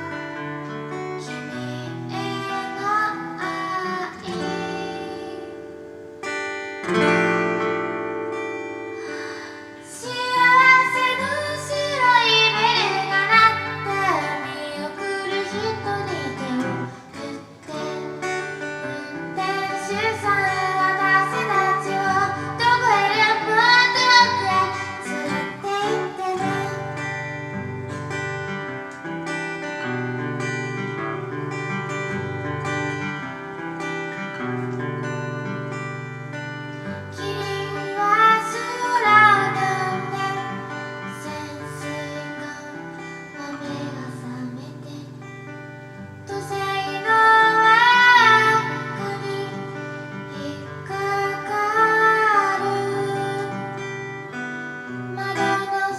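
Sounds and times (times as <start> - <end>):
woman singing: 0.0 - 5.9, 8.6 - 28.1, 36.8 - 55.9
guitar playing: 0.0 - 55.9.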